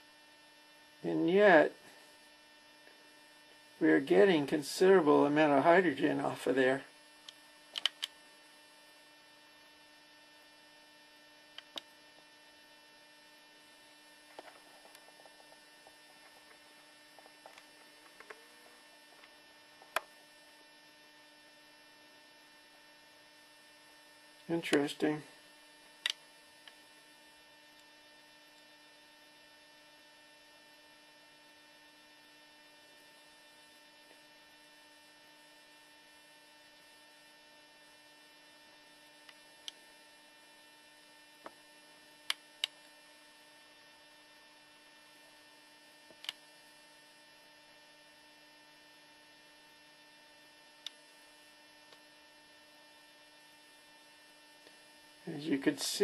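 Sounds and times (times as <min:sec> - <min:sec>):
faint electrical hum: 0:00.0 - 0:56.0
sharp clicks: 0:07.2 - 0:08.2.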